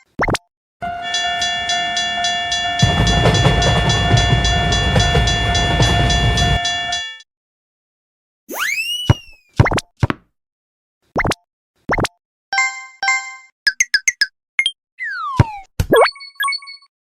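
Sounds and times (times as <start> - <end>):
railroad crossing bell ringing: 0.8 - 7.2
train rushing past: 0.9 - 7.1
rising cartoon whistle-slide: 8.5 - 9.6, 15.0 - 16.9.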